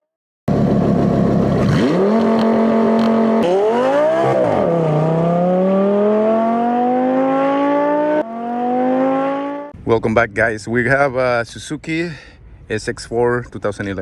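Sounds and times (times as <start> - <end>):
car engine revving: 0.5 - 9.8.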